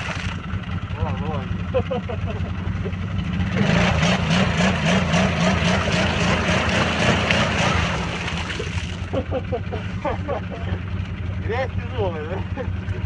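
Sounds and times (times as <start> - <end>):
churning through mud: 0.0 - 13.0
engine revving hard: 3.2 - 8.8.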